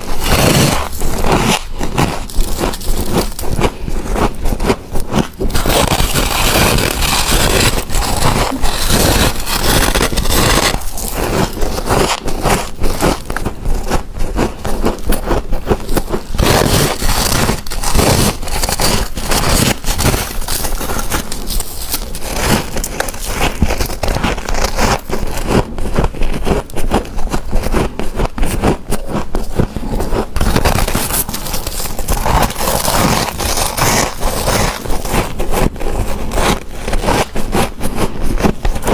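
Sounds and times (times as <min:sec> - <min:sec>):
crunchy chewing of frost: 0:00.0 - 0:38.9.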